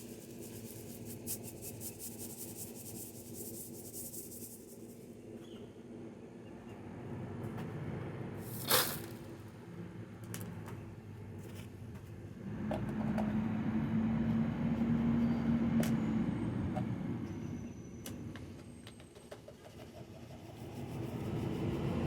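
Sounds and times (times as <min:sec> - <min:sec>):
passing motor vehicle rumble: 0:12.4 - 0:17.7.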